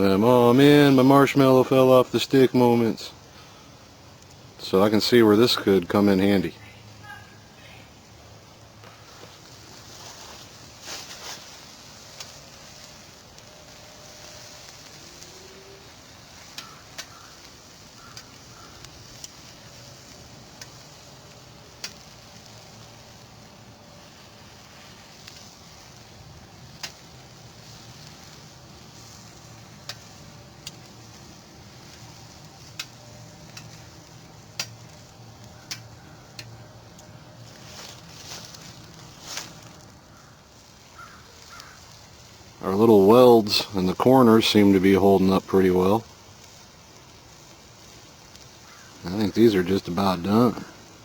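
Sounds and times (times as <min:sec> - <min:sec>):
coals popping and crackling: 0:00.0 - 0:51.0
sausages sizzling on a grill: 0:00.0 - 0:51.0.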